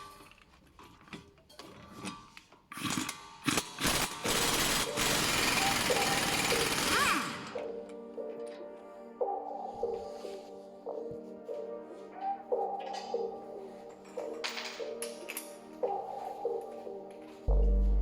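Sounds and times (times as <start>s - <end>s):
rushing rattling tool noise: 1.7s - 7.5s
background music: 4.3s - 18.0s.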